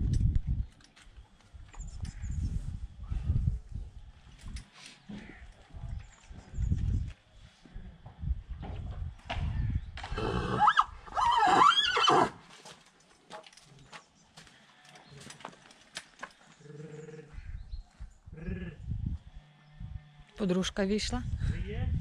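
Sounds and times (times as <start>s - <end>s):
horse neighing: 10.1s - 12.4s.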